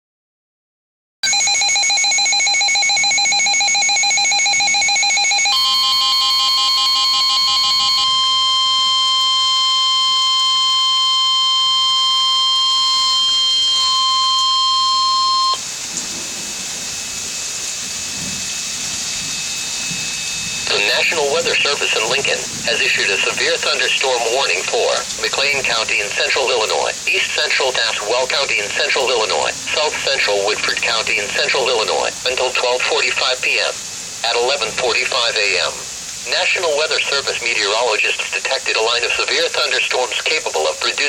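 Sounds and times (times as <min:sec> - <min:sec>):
piercing alert tone: 0:01.2 - 0:15.6
buzzy digital data chirps: 0:03.1 - 0:15.6
faint radio hiss: 0:20.6 - 0:41.0.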